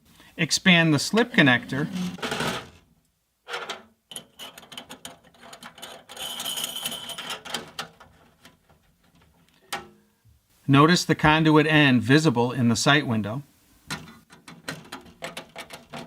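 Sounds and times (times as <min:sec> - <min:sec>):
metal clicks and scraping: 0:03.5 - 0:09.9, 0:13.9 - 0:16.0.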